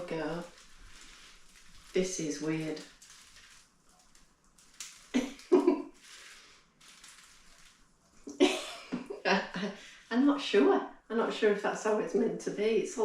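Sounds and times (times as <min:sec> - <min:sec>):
plastic packaging rustling: 0:00.0 - 0:08.3.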